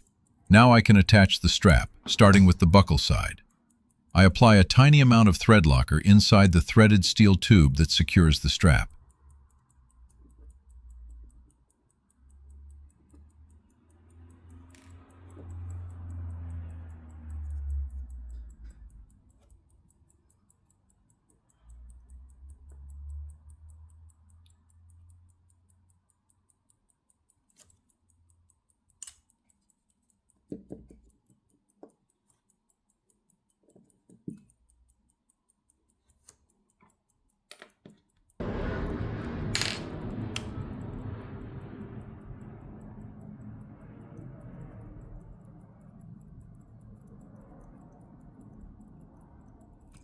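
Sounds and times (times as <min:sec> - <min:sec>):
steady noise: 0:00.0 - 0:27.0, 0:38.4 - 0:50.0
sharp clicks: 0:00.0 - 0:50.0
faint clicks of small tools: 0:08.9 - 0:38.4, 0:43.6 - 0:50.0.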